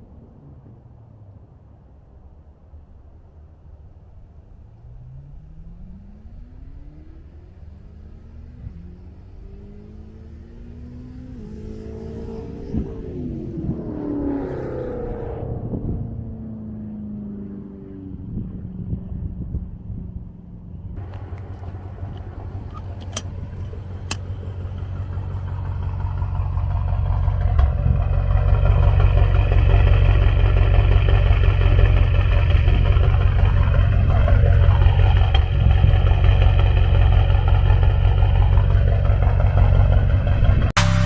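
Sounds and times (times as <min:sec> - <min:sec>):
vehicle engine running: 0:18.1 - 0:41.0.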